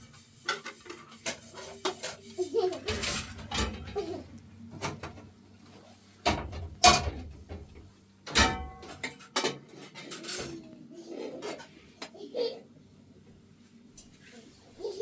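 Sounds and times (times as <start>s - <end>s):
objects knocking and clattering: 0.4s - 4.1s, 6.2s - 10.6s.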